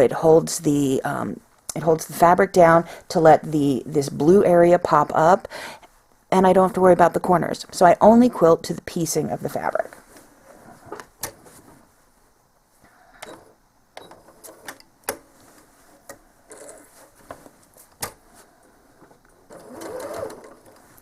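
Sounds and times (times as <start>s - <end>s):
sewing machine stitching: 19.5s - 20.9s.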